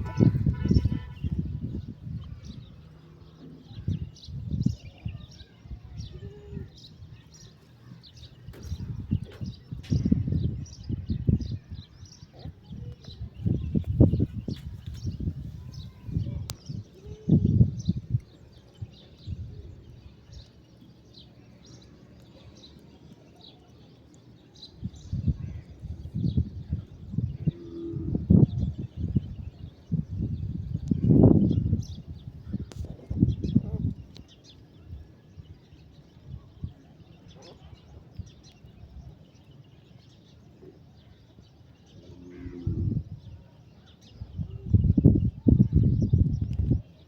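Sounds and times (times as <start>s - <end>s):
small birds chirping: 0.0s - 47.0s
low thumps and rustles: 8.2s - 10.2s, 13.7s - 15.9s.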